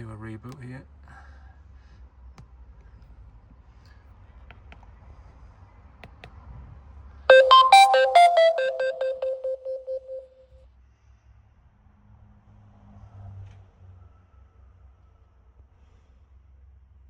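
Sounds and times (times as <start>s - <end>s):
descending electronic beeps: 7.3s - 10.2s.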